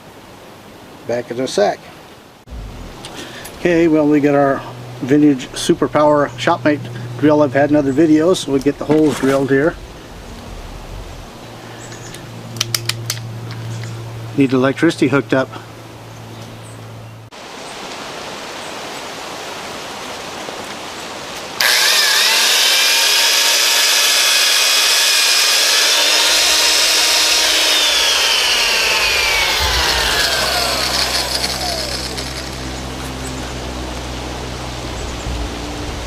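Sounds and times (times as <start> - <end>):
electric drill motor whine: 21.6 - 33.2.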